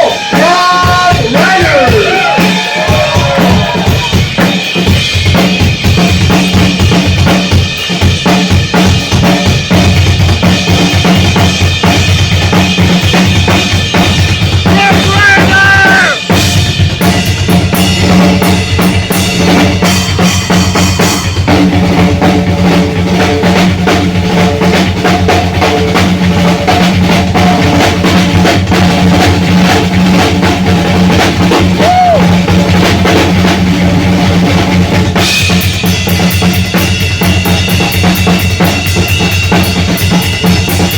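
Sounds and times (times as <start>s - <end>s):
rock drum solo: 0.0s - 40.9s
cymbals: 35.2s - 40.9s.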